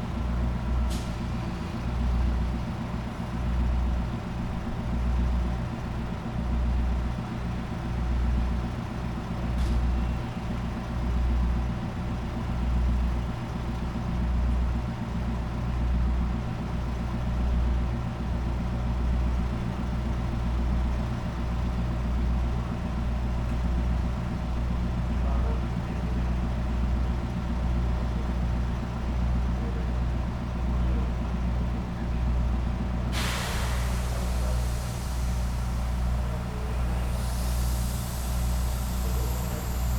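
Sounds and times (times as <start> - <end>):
diesel train engine idling: 0.0 - 39.9
compressed air hissing: 33.2 - 39.9.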